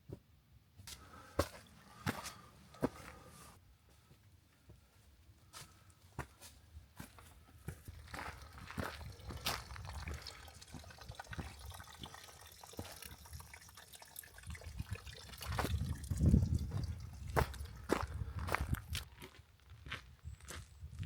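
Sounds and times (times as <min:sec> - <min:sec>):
waterfall trickling: 0:07.9 - 0:17.9
water drips: 0:07.9 - 0:18.2.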